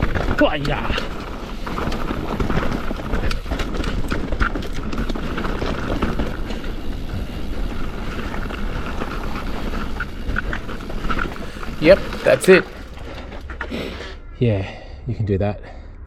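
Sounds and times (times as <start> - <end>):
bike rattling over bumps: 0.0 - 14.1
bike tyres crunching on dirt: 0.0 - 14.1.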